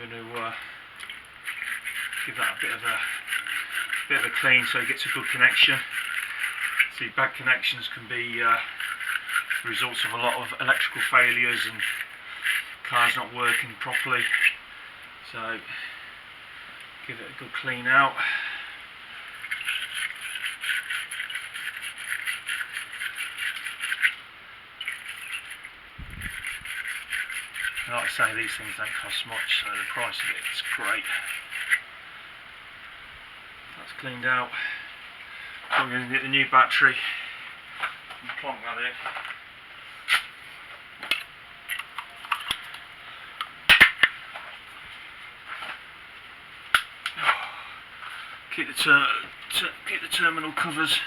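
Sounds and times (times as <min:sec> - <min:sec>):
wire brush scrubbing metal: 0:00.4 - 0:14.7, 0:19.2 - 0:32.0.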